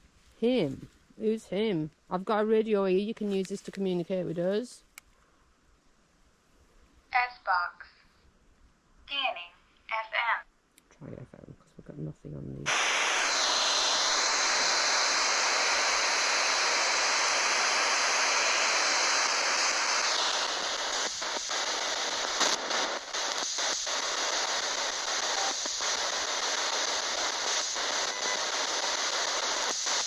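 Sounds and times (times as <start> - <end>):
radio static hiss: 12.4 - 30.0.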